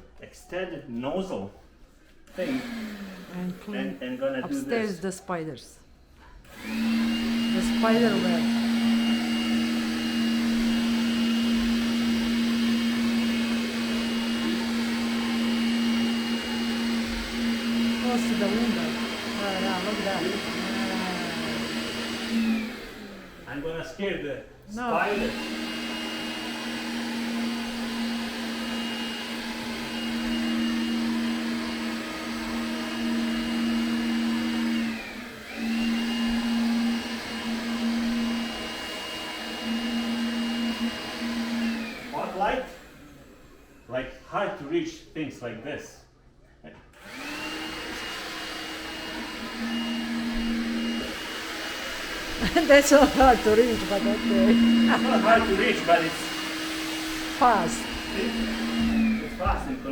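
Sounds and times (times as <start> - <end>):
vacuum cleaner motor hum: 2.2 - 5.0, 6.3 - 24.2, 24.8 - 44.0, 47.0 - 59.9.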